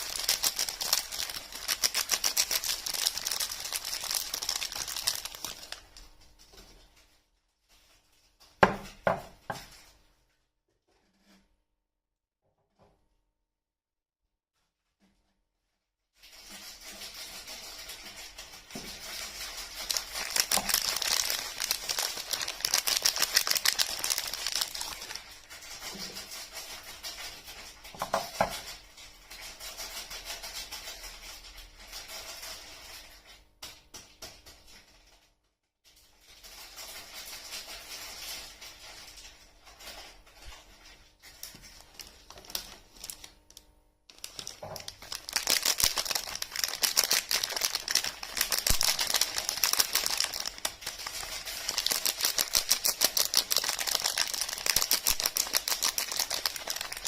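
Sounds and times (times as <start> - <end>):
packaging crinkling: 0.0 - 6.2, 16.7 - 28.7, 36.5 - 57.0.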